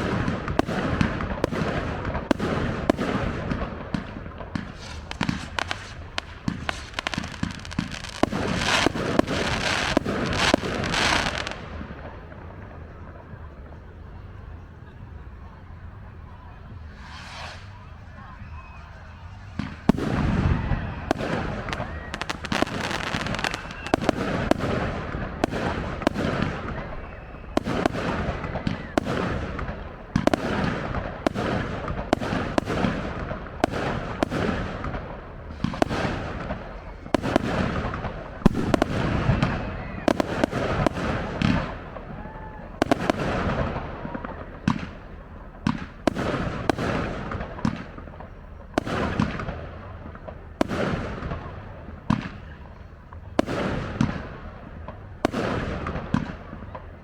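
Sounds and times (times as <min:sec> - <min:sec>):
firework crackling: 0:00.0 - 0:57.0.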